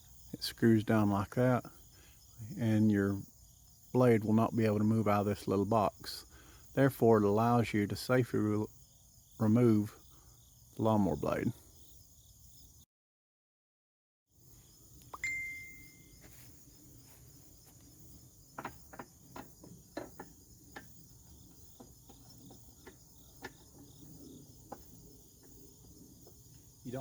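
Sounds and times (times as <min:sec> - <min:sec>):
crickets chirping: 0:00.0 - 0:12.9, 0:14.3 - 0:27.0
sharp metallic ping: 0:15.2 - 0:16.1.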